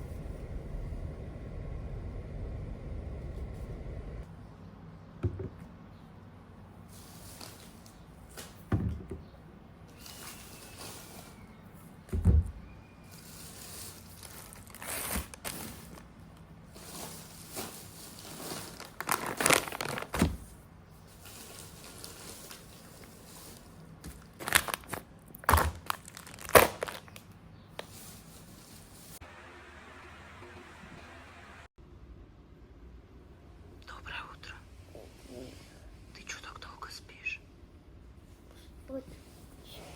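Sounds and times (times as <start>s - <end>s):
packaging crinkling: 13.1s - 16.1s, 16.8s - 20.4s, 21.1s - 29.2s.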